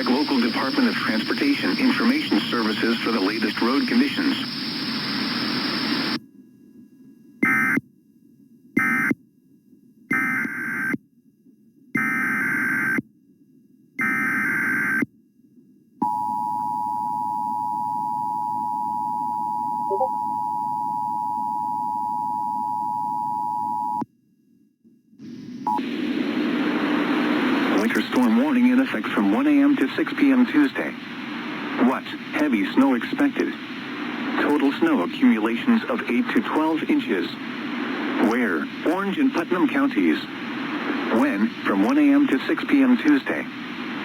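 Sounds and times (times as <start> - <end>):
buzzy digital data bursts: 0.0 - 6.2
two-tone attention signal: 19.8 - 20.7.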